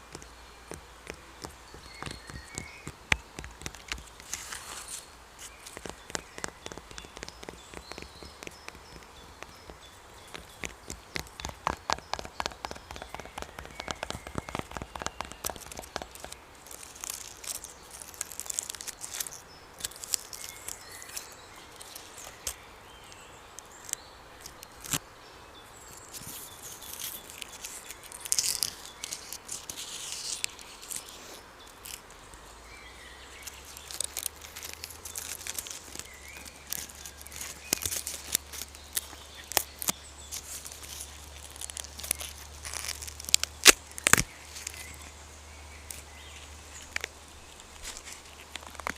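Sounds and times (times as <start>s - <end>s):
crackles and clicks: 0.0s - 25.0s, 25.8s - 48.9s
faint bird chirps: 0.1s - 16.4s.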